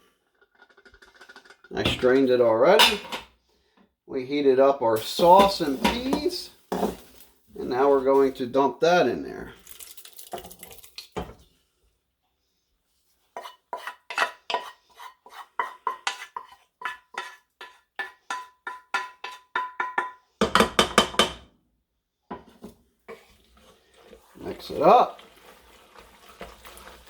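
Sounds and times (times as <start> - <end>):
spoon scraping and knocking a pot: 0.5 - 3.3, 5.0 - 7.2, 13.3 - 21.5, 22.3 - 23.7.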